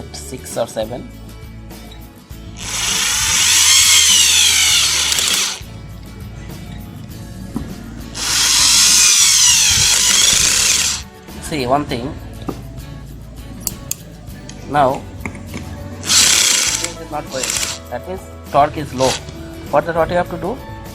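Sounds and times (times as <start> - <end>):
background music: 0.0 - 20.9
power screwdriver driving screw: 2.6 - 5.6, 8.2 - 11.0, 16.0 - 17.8.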